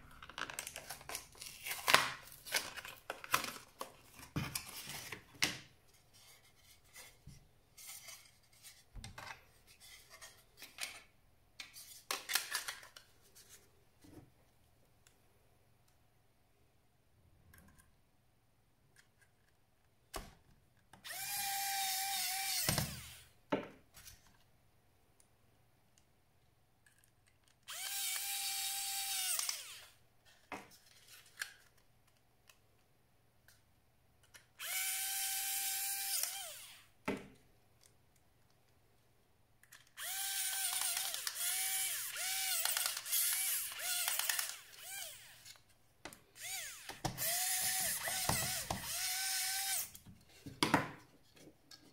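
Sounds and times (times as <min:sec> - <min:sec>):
electric screwdriver whirring: 0:21.0 - 0:23.2, 0:27.7 - 0:29.9, 0:34.6 - 0:36.8, 0:40.0 - 0:45.5, 0:46.4 - 0:50.0.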